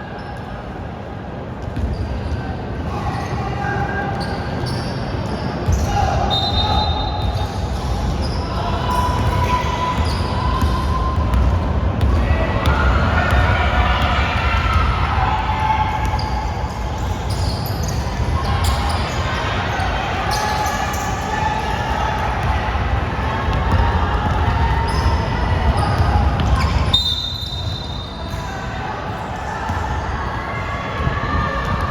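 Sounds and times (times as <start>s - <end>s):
players' voices: 0.2s - 31.9s
basketball bouncing on court: 1.6s - 2.0s, 9.2s - 15.2s, 22.2s - 27.0s.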